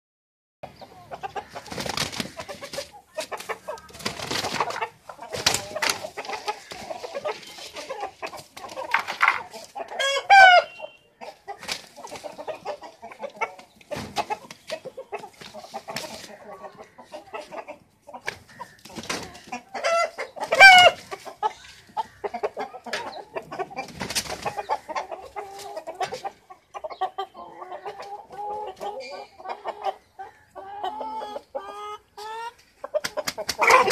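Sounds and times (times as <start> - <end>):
chickens clucking: 0.6 - 33.9
loud short chicken calls: 9.9 - 11.8.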